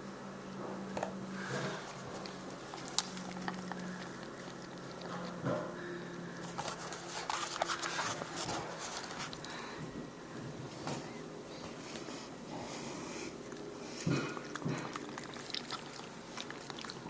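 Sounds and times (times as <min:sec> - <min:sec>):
low steady hum: 0:00.0 - 0:17.0
cat lapping water: 0:02.2 - 0:07.7, 0:13.6 - 0:17.0.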